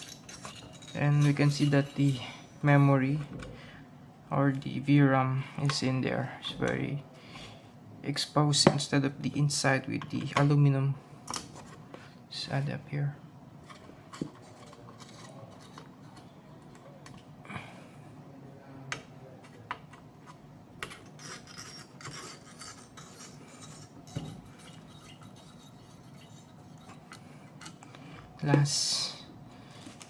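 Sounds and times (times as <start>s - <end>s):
small parts clicking and scraping: 0.0s - 2.9s, 13.6s - 17.2s, 19.4s - 28.6s.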